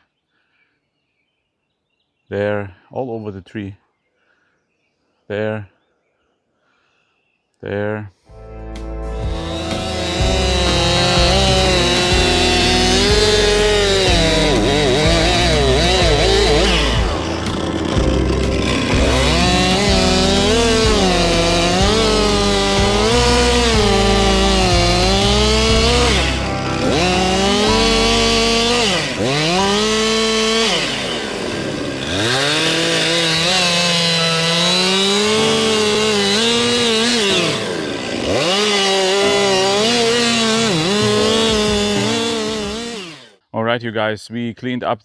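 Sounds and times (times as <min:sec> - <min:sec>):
chainsaw cutting wood: 0:09.1 - 0:43.4.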